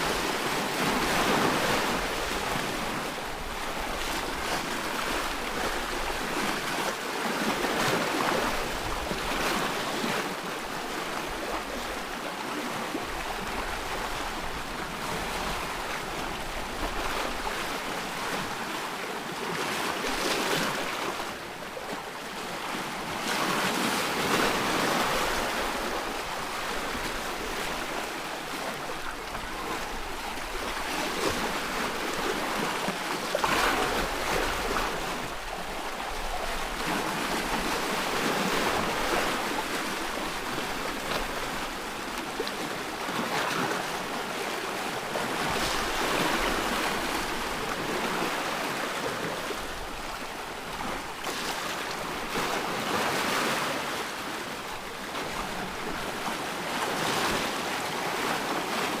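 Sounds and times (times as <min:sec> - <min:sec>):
ocean waves breaking on shore: 0:00.0 - 0:59.0.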